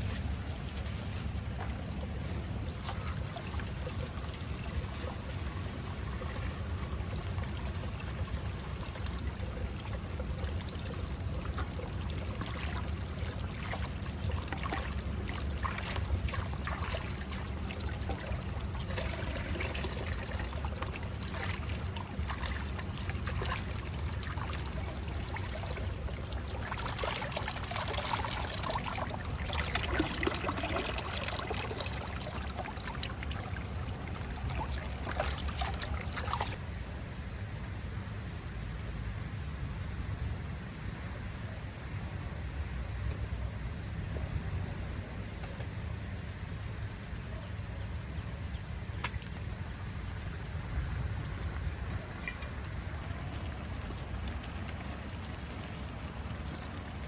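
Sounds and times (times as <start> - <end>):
water trickling and splashing: 0.0 - 36.6, 48.4 - 57.0.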